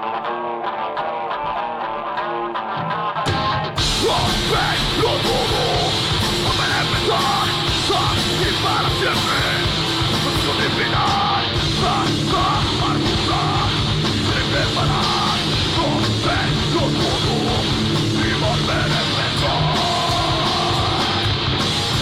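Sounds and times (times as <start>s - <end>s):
heavy rock music: 0.0s - 22.0s
person yelling vocals: 3.9s - 9.6s, 10.3s - 21.2s.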